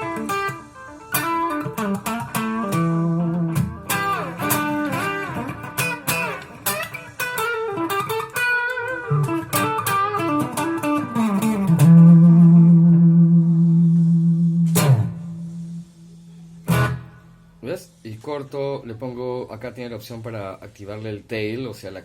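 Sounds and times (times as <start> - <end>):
electric guitar picked notes: 0.0 - 17.6.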